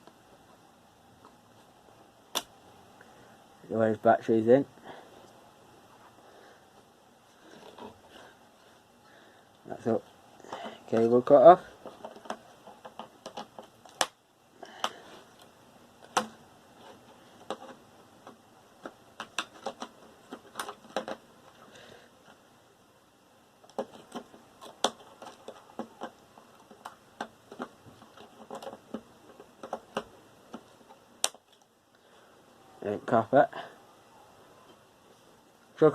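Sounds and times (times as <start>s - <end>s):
small metal and plastic pieces handled: 23.7s - 30.0s.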